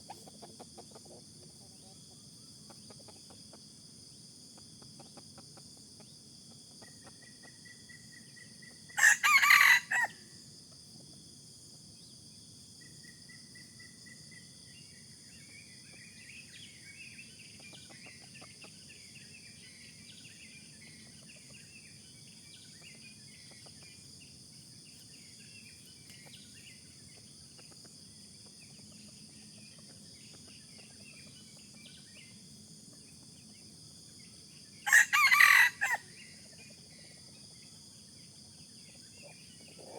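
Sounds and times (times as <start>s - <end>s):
rooster crowing: 9.0s - 10.2s, 34.8s - 36.1s
small birds twittering: 13.0s - 35.6s.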